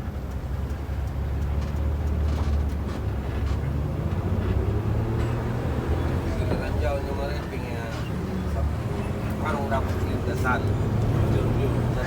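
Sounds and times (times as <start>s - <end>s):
bus engine droning: 0.0s - 12.0s.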